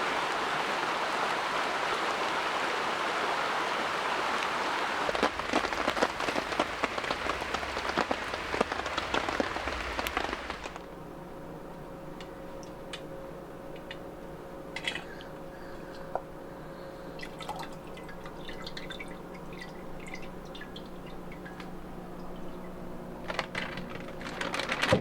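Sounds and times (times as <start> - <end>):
rain falling: 0.0 - 10.9
faint steady hum: 0.0 - 25.0
raindrops tapping on a surface: 4.4 - 10.9.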